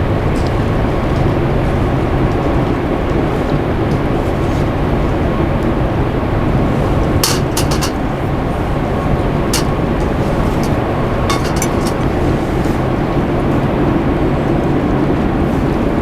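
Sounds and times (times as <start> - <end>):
light sharp clinks: 7.2 - 12.7.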